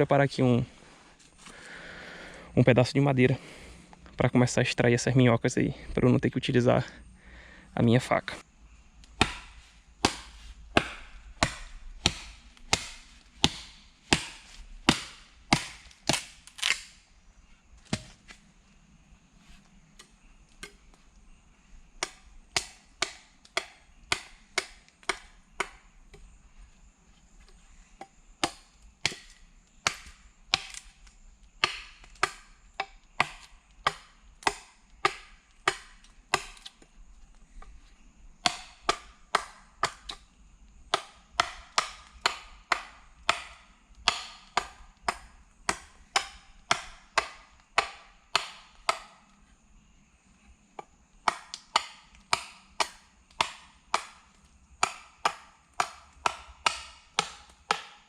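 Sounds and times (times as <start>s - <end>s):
blade chopping wood: 9.2s - 17.0s, 17.8s - 18.4s, 22.0s - 26.2s, 28.4s - 31.0s, 31.6s - 36.8s, 38.4s - 40.2s, 40.9s - 49.2s, 50.8s - 58.0s.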